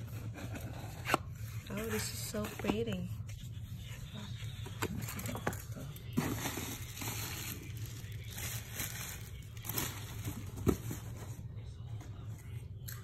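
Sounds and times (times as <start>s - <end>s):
packaging rustling and crinkling: 4.5s - 11.4s.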